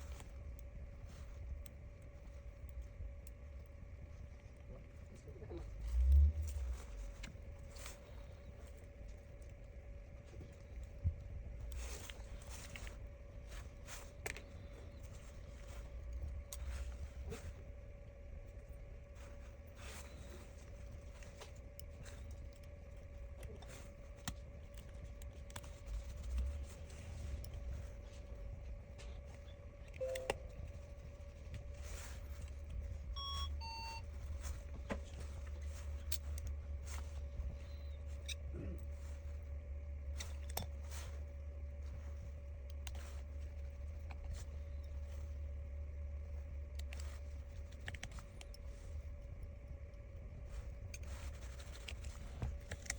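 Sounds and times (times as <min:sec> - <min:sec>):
faint steady tone: 0:00.0 - 0:52.9
low hum: 0:00.0 - 0:52.9
short electronic beeps: 0:30.0 - 0:30.5, 0:33.2 - 0:34.0.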